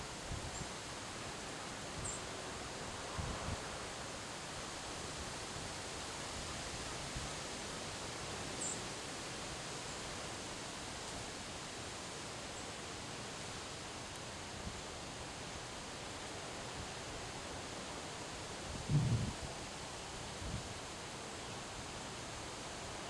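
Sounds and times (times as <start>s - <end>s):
wind blowing through trees: 14.3s - 23.0s.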